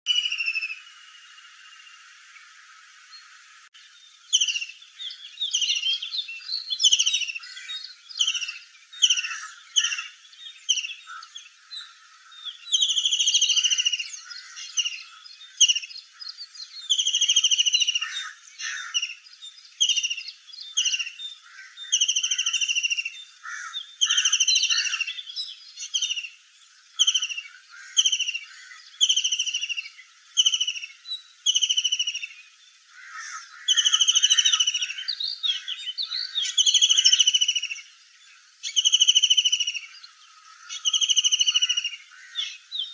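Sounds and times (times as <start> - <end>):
kingfisher calling: 4.3 - 19.2, 19.8 - 25.2, 33.0 - 37.8.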